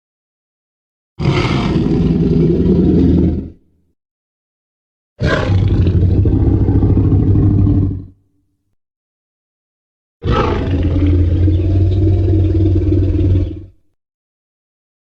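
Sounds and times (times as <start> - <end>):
deep dinosaur roar: 1.2 - 3.6, 5.2 - 8.2, 10.2 - 13.8.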